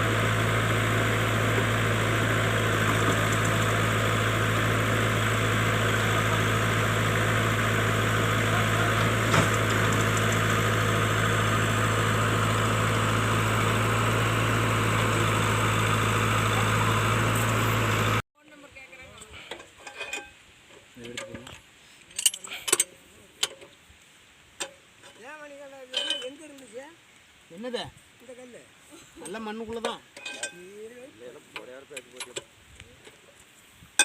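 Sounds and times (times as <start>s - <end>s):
digger diesel engine running: 0.0s - 18.2s.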